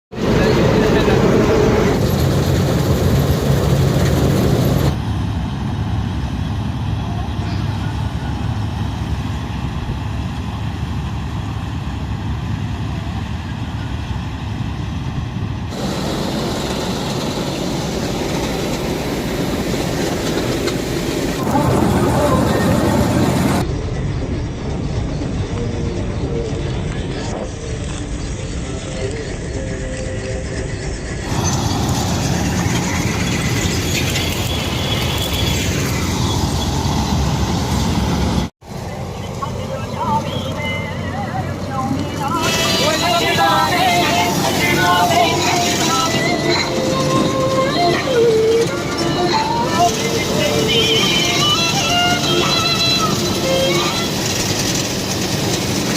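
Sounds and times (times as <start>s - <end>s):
harvester engine humming: 0.2s - 55.9s
loud hissy mechanical din: 15.7s - 24.2s.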